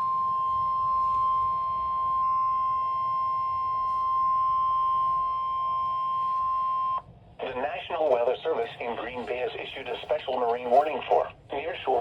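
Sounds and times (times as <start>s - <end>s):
steady high-pitched alarm tone: 0.0s - 7.0s.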